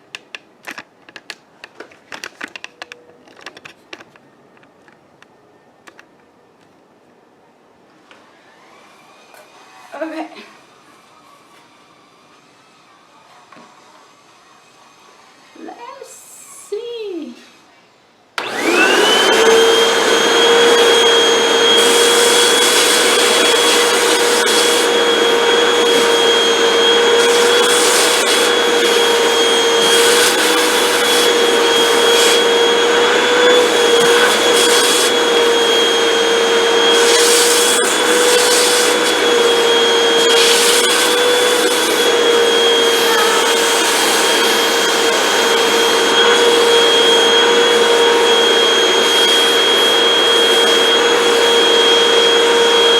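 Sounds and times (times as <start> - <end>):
vacuum cleaner running: 8.1 - 15.8, 18.4 - 52.9.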